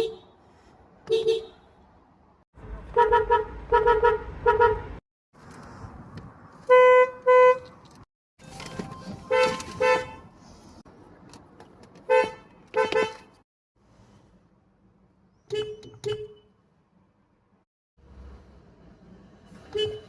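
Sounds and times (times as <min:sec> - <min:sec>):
car horn tooting: 0:06.7 - 0:07.7, 0:09.2 - 0:10.3, 0:12.1 - 0:13.4, 0:19.7 - 0:20.0.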